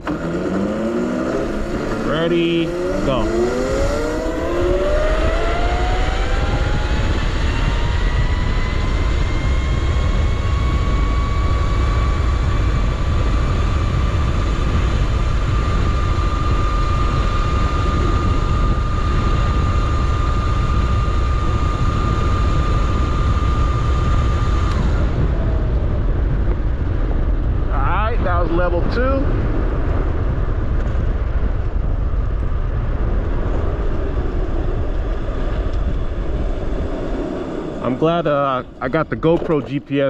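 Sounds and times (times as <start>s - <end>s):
electric motor whining: 0.0s - 26.6s
wind rumble on microphone: 0.0s - 40.0s.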